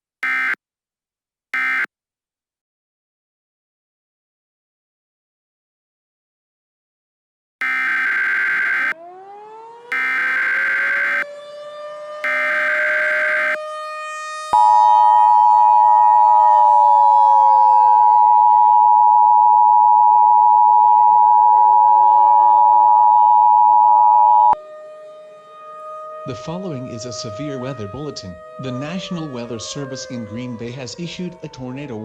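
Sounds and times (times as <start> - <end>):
digital data bursts: 0.2 - 0.6, 1.6 - 1.9, 7.6 - 8.9, 9.9 - 11.2, 12.3 - 13.6
two-tone alert signal: 0.2 - 0.6, 1.6 - 1.9, 7.6 - 9.0, 9.9 - 11.2, 12.2 - 13.6
warning siren wailing: 0.2 - 0.6, 1.6 - 1.9, 7.6 - 32.0.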